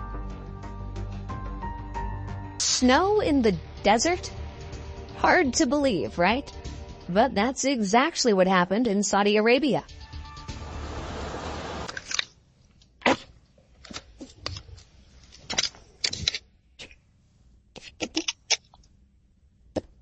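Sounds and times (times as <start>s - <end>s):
brief rush of noise: 10.5s - 11.9s.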